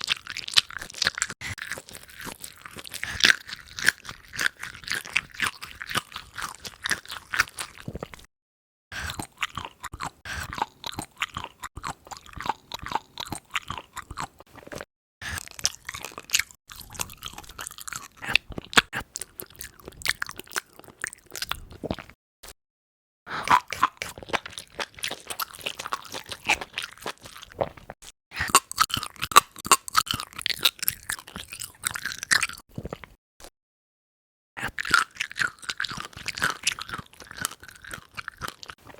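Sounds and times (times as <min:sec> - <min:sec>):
wet chewing: 0:00.0 - 0:08.3, 0:08.9 - 0:22.6, 0:23.3 - 0:33.2, 0:34.6 - 0:38.9.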